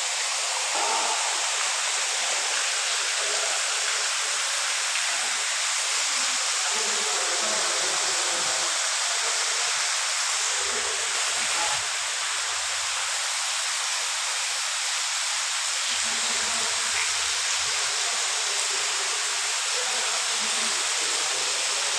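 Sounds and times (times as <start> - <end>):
floodwater rushing: 0.0 - 14.8
heavy rain: 0.0 - 21.9.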